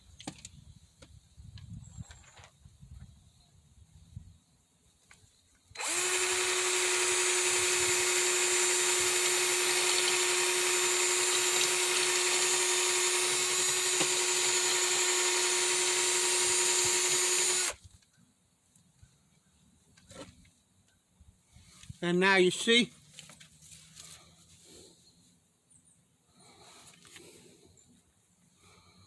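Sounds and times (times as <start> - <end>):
small power tool running: 5.7 - 17.8.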